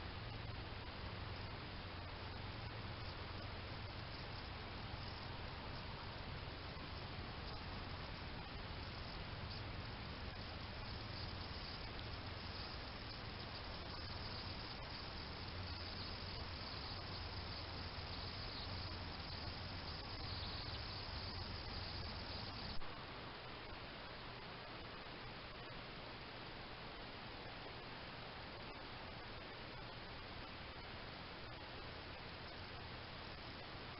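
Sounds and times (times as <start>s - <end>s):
crickets chirping: 0.0s - 23.0s, 27.4s - 33.9s
low hum: 0.0s - 25.7s
recorder hiss: 0.0s - 33.9s.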